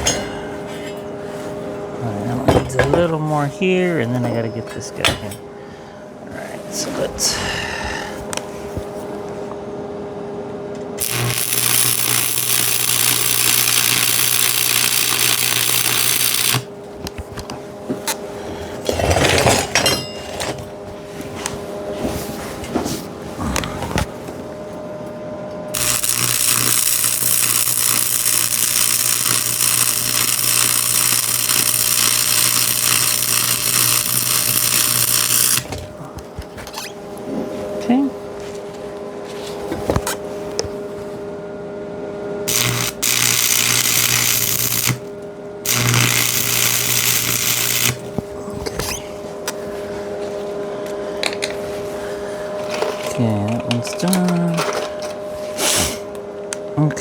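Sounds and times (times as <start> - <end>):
low electrical hum: 0.0 - 57.0
arc welding hiss: 11.0 - 16.7, 25.8 - 35.6, 42.5 - 45.1, 45.7 - 48.0.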